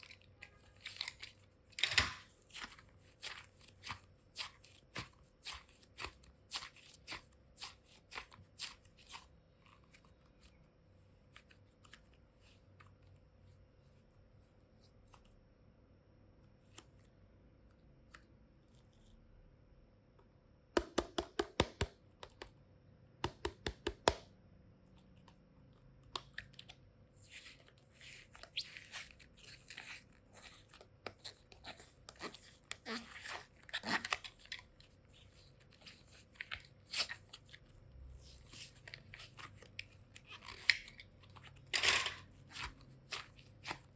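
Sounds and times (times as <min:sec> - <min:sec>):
packaging crinkling and rustling: 0:00.0 - 0:07.4, 0:26.4 - 0:43.9
hands tapping toy boxes: 0:20.8 - 0:22.5, 0:23.2 - 0:24.3.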